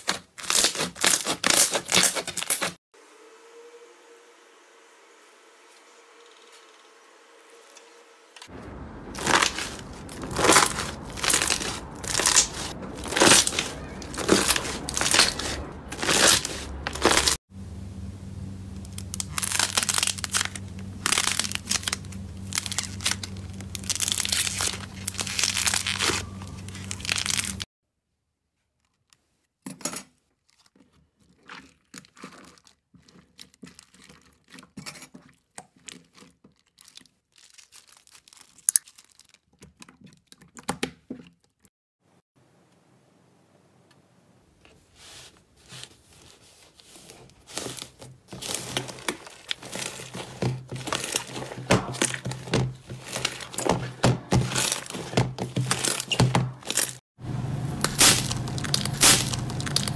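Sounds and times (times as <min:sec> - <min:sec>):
steady low hum: 0:08.5 - 0:27.6, 0:57.2 - 0:59.9
slime squishing crackly: 0:09.1 - 0:17.4, 0:18.7 - 0:27.7, 0:30.5 - 0:40.6, 0:46.8 - 0:57.0, 0:57.8 - 0:59.9.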